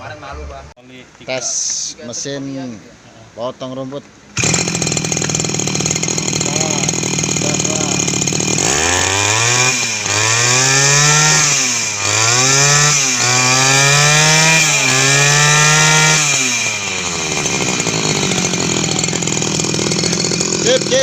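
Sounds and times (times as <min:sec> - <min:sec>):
brush cutter engine revving: 0:04.4 - 0:21.0.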